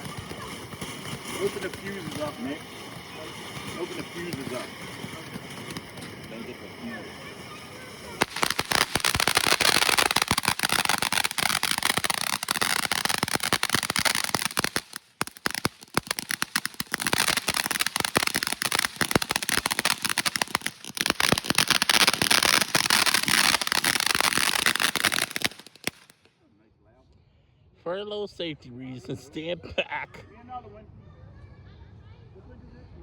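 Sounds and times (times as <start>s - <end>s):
fireworks crackling and popping: 0.0s - 26.3s.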